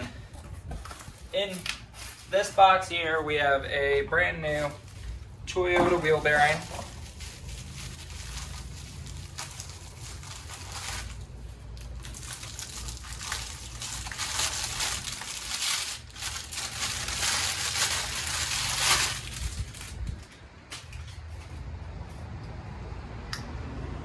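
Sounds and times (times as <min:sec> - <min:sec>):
packaging crinkling and rustling: 0:00.0 - 0:03.5, 0:04.2 - 0:21.7.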